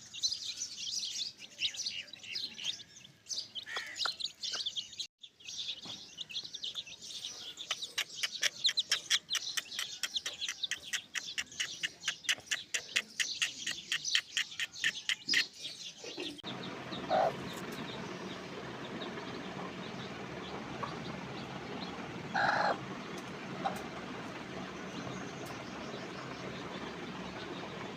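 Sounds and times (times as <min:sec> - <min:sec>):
chicks peeping: 0:05.7 - 0:27.9.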